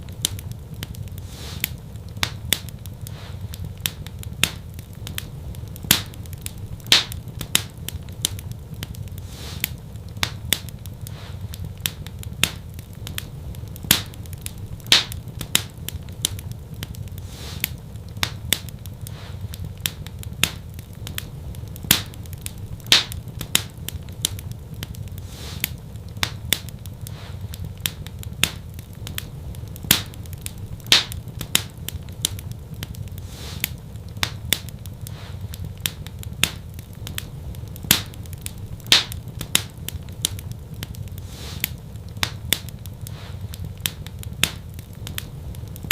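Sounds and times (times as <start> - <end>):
low rumble of flames: 0.0 - 45.9
wood fire crackling and popping: 0.0 - 45.9.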